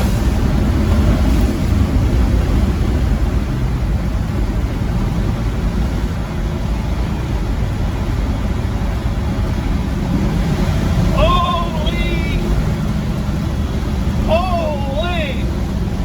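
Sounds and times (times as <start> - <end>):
pickup truck engine and exhaust: 0.0 - 16.0
road rumble: 0.0 - 16.0.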